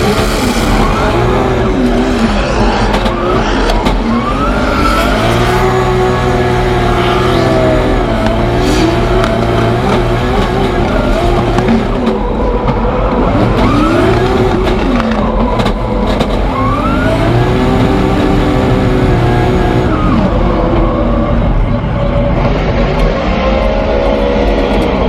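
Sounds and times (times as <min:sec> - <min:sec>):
car engines revving: 0:00.0 - 0:25.0.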